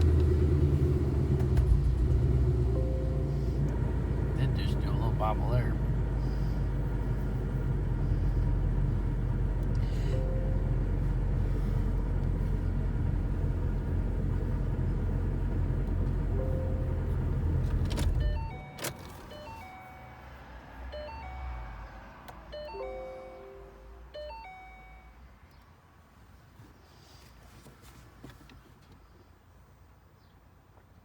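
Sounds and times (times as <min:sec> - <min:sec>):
car engine running: 0:00.0 - 0:25.0
electronic chime tones: 0:22.5 - 0:25.1.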